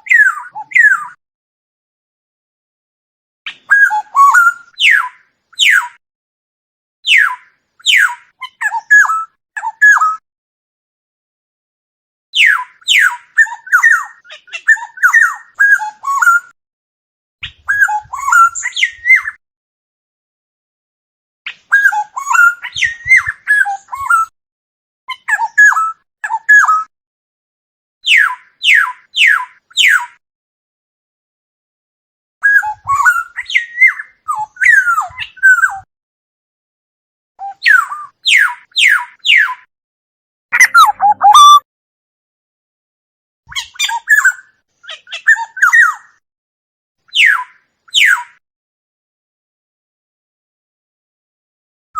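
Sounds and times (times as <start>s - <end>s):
oriole whistling song: 3.7s - 5.9s, 21.8s - 24.2s, 32.4s - 35.8s, 40.6s - 41.6s
oriole calling: 40.6s - 41.6s.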